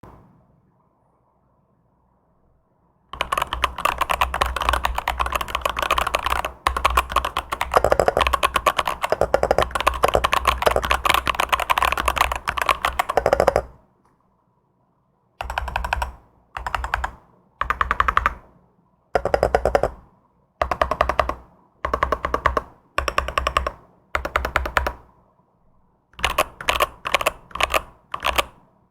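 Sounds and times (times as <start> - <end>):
typing on mechanical keyboard: 3.2 - 13.8, 15.4 - 18.4, 19.2 - 20.0, 20.6 - 25.1, 26.2 - 28.6.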